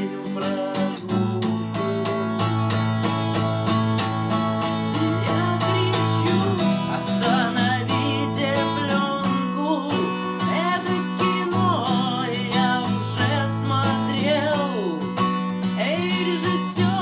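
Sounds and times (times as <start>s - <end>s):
person singing: 0.0s - 2.3s, 4.8s - 17.0s
acoustic guitar strumming: 0.0s - 17.0s.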